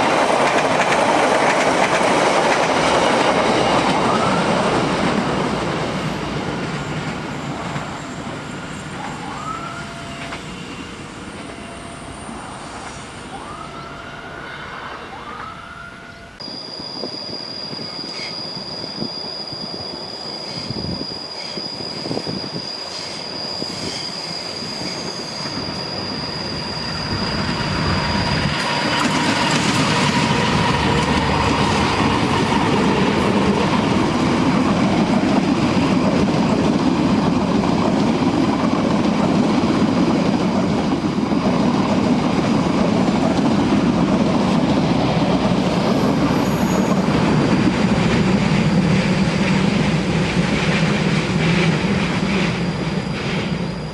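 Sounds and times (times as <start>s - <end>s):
train wheels rumbling: 0.0s - 53.9s
high ringing tone: 2.0s - 35.1s, 40.0s - 49.3s.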